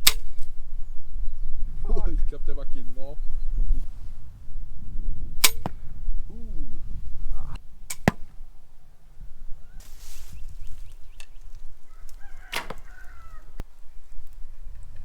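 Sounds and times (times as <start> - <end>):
arrows striking foam targets: 5.4 - 5.8, 7.8 - 8.4.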